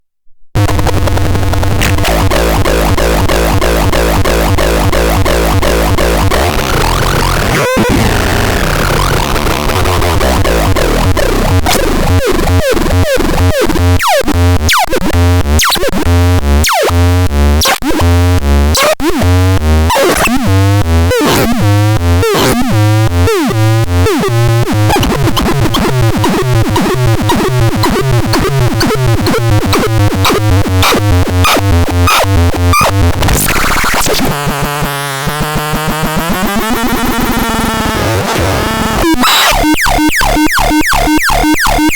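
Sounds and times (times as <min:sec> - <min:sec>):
low throbbing bass pulse: 0:00.6 - 0:07.5, 0:08.1 - 0:33.5
steady buzzing synth tone: 0:00.6 - 0:09.3, 0:22.8 - 0:38.0, 0:38.7 - 0:41.9
synthesizer pulses with falling sweeps: 0:01.8 - 0:14.2, 0:24.9 - 0:41.9.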